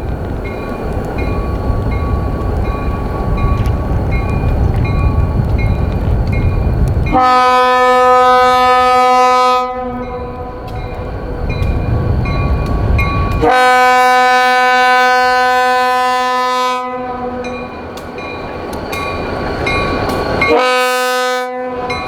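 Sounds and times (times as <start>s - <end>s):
diesel locomotive rumble: 0.0s - 22.0s
locomotive horn blast: 7.1s - 11.0s, 13.3s - 17.7s, 20.4s - 22.0s.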